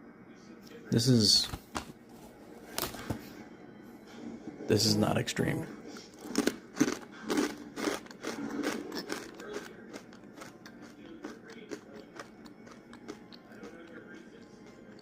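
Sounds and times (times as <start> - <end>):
tortilla chips being chewed: 6.0 - 15.0.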